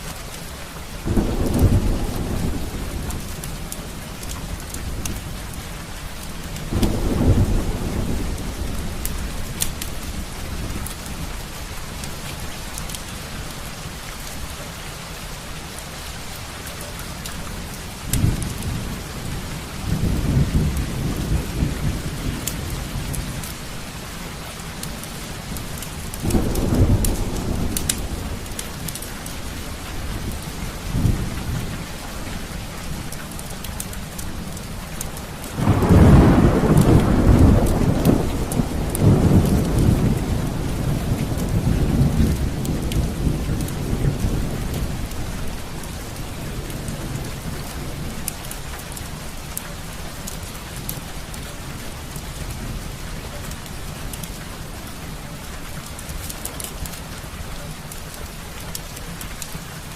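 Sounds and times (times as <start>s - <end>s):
steady rain: 0.0s - 59.9s
thunder rumbling: 1.0s - 5.5s, 6.1s - 12.2s, 18.0s - 49.3s.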